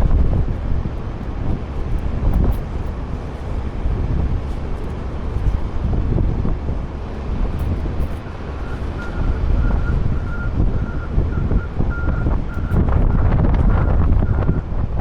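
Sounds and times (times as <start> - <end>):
low truck rumble: 0.0 - 15.0
wind buffeting microphone: 0.0 - 15.0
truck reversing alarm beeping: 8.2 - 14.7.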